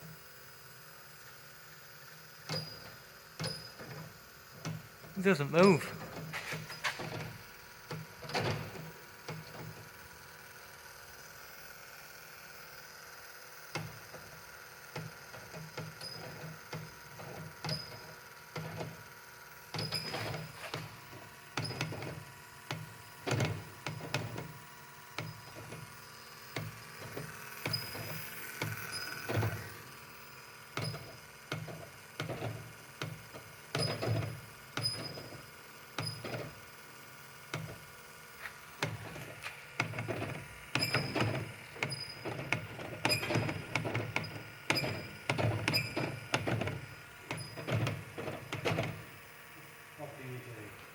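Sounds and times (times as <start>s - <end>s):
tools and parts knocking and clunking: 38.4s - 49.0s.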